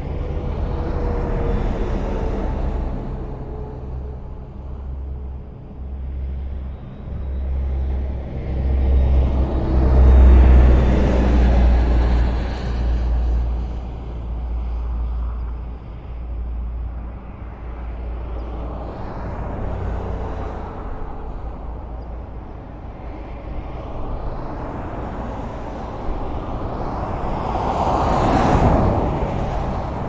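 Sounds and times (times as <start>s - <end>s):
traffic rumble: 0.0s - 30.0s.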